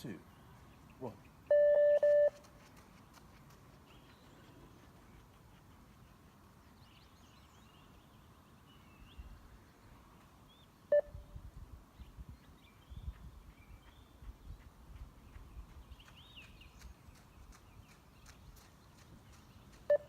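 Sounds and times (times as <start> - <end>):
short electronic beep: 1.5 - 2.4
running footsteps: 2.1 - 6.7, 13.1 - 20.0.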